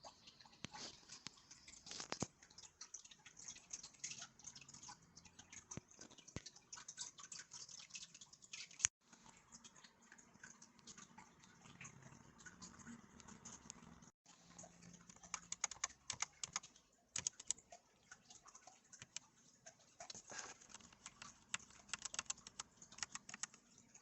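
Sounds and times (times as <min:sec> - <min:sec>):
mechanical keyboard typing: 0:15.0 - 0:17.6, 0:19.0 - 0:19.2, 0:20.4 - 0:23.6.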